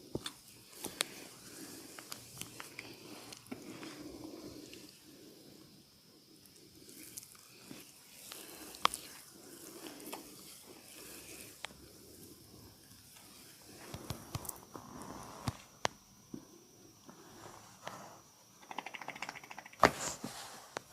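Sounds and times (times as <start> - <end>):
hands rubbing oiled skin: 0.6 - 4.9, 6.8 - 11.8
sharp clicks: 18.6 - 19.9.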